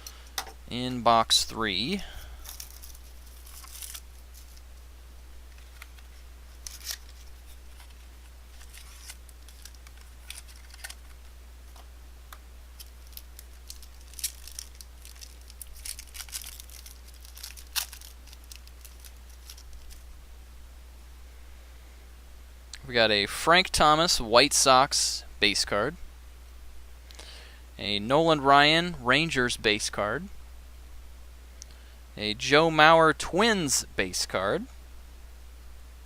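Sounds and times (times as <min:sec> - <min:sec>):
faint steady low hum: 0:00.0 - 0:36.0
cardboard tearing and crinkling: 0:02.4 - 0:04.6, 0:05.6 - 0:11.2, 0:12.8 - 0:20.0
trading cards handled: 0:02.4 - 0:04.7, 0:05.5 - 0:20.0.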